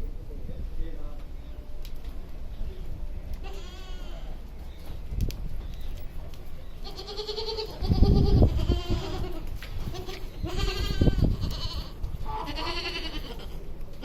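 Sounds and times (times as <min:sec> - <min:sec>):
goats bleating: 0:03.4 - 0:04.3, 0:06.8 - 0:13.7.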